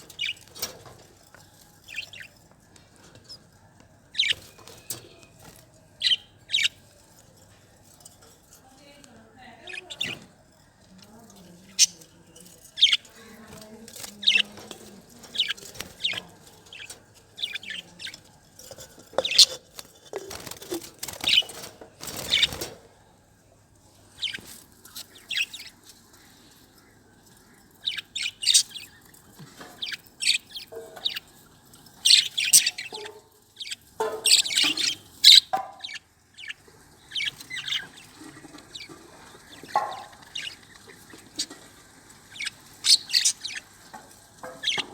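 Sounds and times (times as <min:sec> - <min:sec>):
budgerigars chirping: 0:00.0 - 0:00.8, 0:01.8 - 0:02.4, 0:04.1 - 0:05.2, 0:06.0 - 0:07.0, 0:09.6 - 0:10.3, 0:11.6 - 0:12.1, 0:12.7 - 0:13.3, 0:14.1 - 0:18.2, 0:19.2 - 0:19.6, 0:21.2 - 0:22.7, 0:24.2 - 0:25.8, 0:27.8 - 0:29.2, 0:29.8 - 0:31.4, 0:32.0 - 0:43.8, 0:44.4 - 0:44.9.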